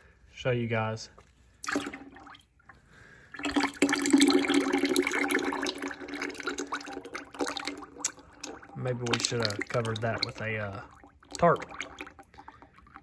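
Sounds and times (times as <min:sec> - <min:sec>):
oil pouring and splashing: 0:01.6 - 0:13.0.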